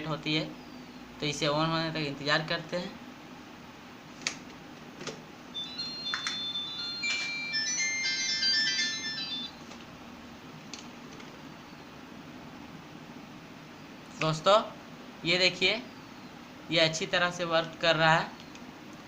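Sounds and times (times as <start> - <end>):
phone startup jingle: 5.6 - 9.6.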